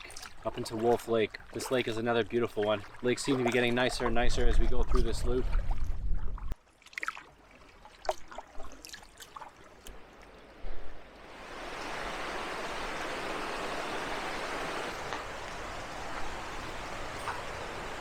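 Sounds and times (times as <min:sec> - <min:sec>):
light water drips: 0:00.0 - 0:11.0
creek water flowing: 0:00.0 - 0:18.0.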